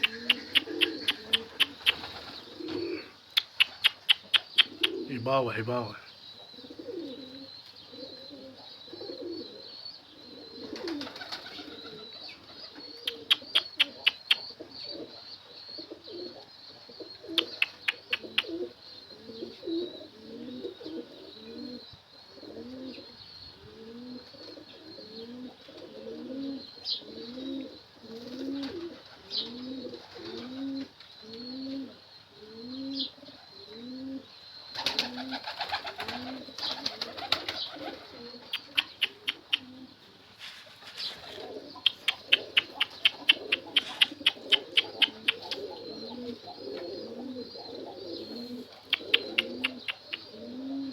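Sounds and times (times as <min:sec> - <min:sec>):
sharp clicks: 0:00.0 - 0:02.1, 0:03.4 - 0:05.0, 0:13.1 - 0:14.4, 0:38.6 - 0:39.6, 0:41.8 - 0:45.7, 0:48.9 - 0:50.2
pigeons cooing: 0:00.0 - 0:50.9.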